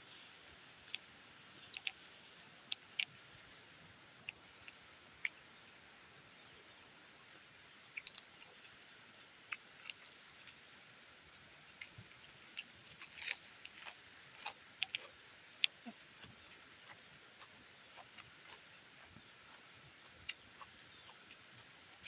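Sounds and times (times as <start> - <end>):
person chewing: 0.9 - 2.0, 8.0 - 8.6, 9.5 - 10.6, 12.5 - 21.4.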